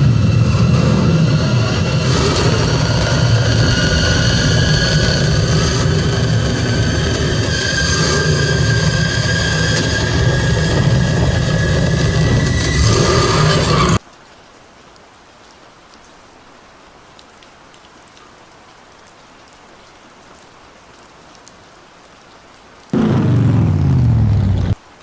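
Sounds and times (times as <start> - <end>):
rushing noise with whistling tones: 0.0 - 14.0
faint hiss with crackles: 14.0 - 25.0.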